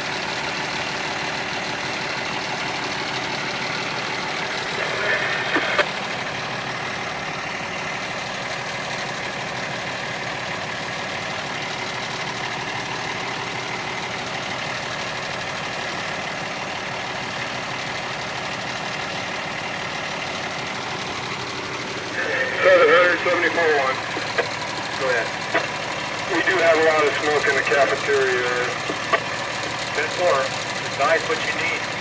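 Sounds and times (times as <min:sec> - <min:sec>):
fire truck engine idling: 0:00.0 - 0:32.0
high whine: 0:04.5 - 0:05.9.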